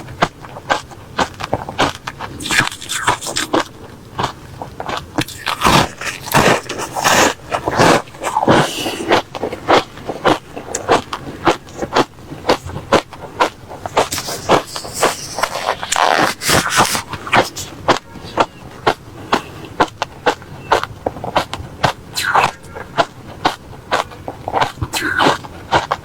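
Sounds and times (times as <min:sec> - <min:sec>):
crunching ice being chewed: 0:00.0 - 0:26.0.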